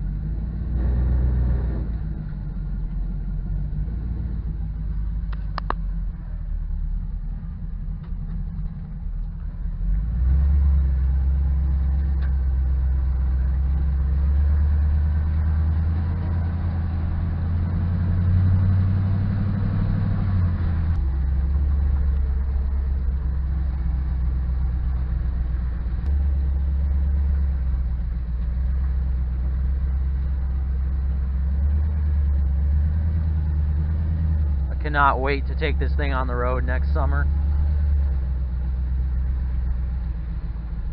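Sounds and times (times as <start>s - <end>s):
truck engine droning: 0.0s - 40.9s.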